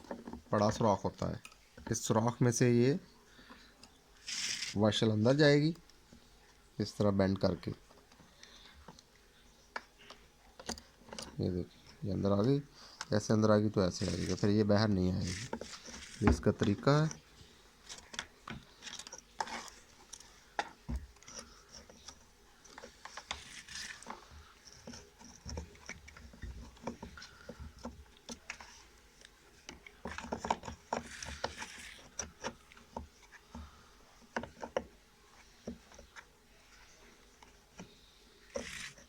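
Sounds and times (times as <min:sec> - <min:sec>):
metal and plastic parts clicking: 0:09.8 - 0:11.5.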